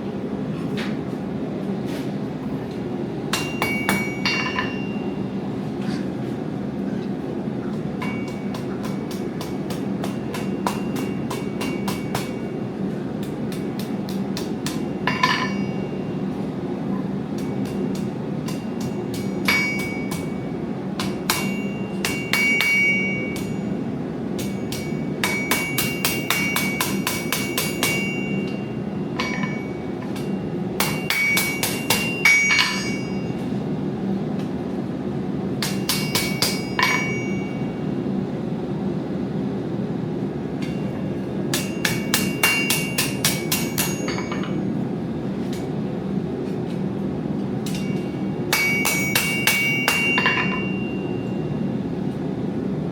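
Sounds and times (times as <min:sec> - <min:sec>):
steady low hum: 0:00.0 - 0:52.9
hammer forging metal with ringing: 0:03.3 - 0:05.4, 0:07.7 - 0:33.7, 0:35.6 - 0:38.0, 0:40.6 - 0:44.8, 0:47.6 - 0:51.9.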